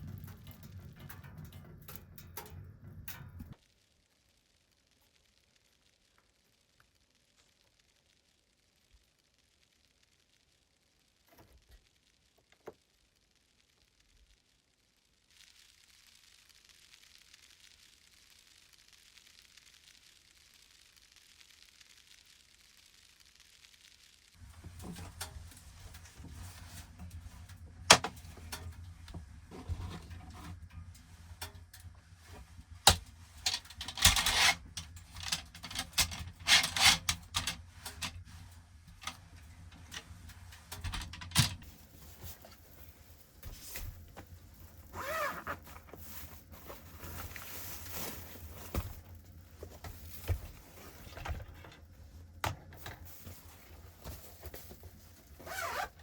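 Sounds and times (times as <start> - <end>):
steady low hum: 0.0 - 56.0
rustling: 23.9 - 56.0.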